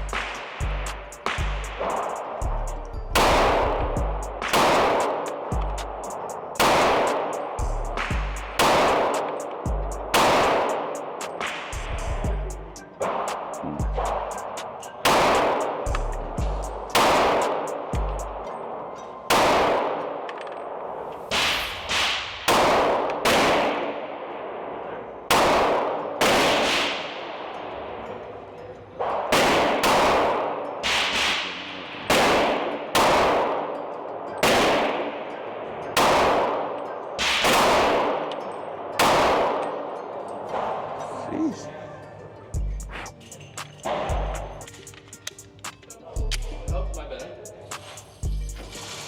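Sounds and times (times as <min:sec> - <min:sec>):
pistol shots with ringing tail: 0:00.0 - 0:28.3, 0:29.0 - 0:41.0, 0:43.5 - 0:45.3.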